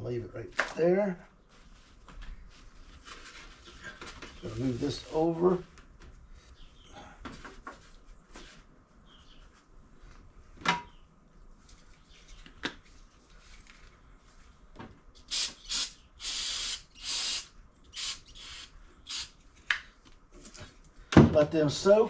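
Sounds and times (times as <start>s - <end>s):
short hissing bursts: 15.2s - 19.4s.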